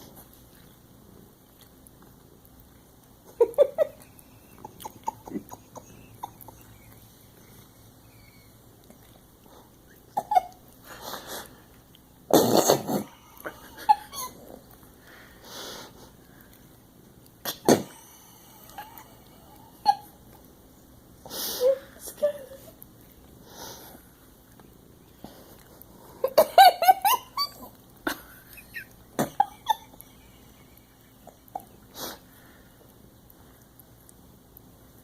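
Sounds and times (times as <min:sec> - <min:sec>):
cat licking: 0:00.0 - 0:12.3, 0:14.3 - 0:20.6, 0:22.4 - 0:26.3
cat sneezing: 0:12.3 - 0:13.2, 0:17.4 - 0:18.1.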